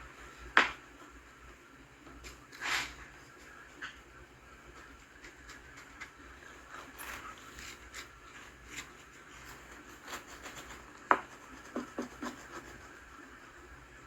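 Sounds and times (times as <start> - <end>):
squeegee scraping over wet film: 2.2 - 4.0, 4.8 - 13.2.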